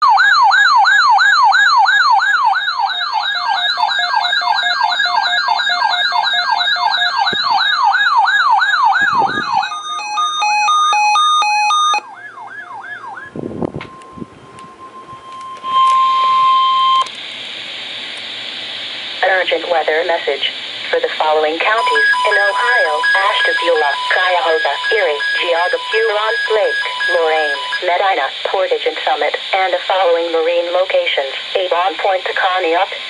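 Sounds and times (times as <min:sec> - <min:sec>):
electronic siren yelp: 0:00.0 - 0:17.1, 0:21.6 - 0:28.2
two-note hi-lo siren: 0:00.0 - 0:17.1, 0:21.8 - 0:28.0.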